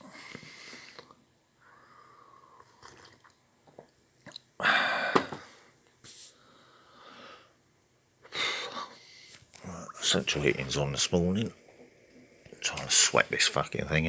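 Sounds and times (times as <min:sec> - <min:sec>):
man breathing: 0:04.6 - 0:07.6.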